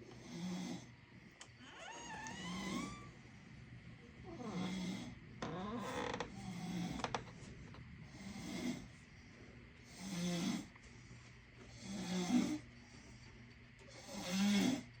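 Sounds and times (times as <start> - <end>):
person snoring: 2.2 - 3.1, 4.2 - 7.2, 8.1 - 9.0, 9.8 - 10.7, 11.7 - 12.7, 13.9 - 14.9.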